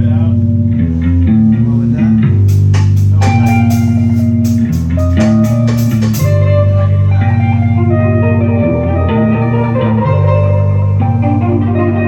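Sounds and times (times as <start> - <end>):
rock band music: 2.0 - 12.0
cymbals struck: 2.5 - 6.6.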